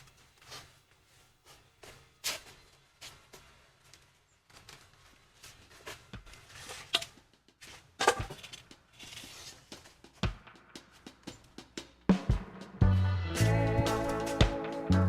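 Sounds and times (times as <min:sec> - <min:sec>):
knocks and clinks of steel rebar: 0:08.0 - 0:08.6.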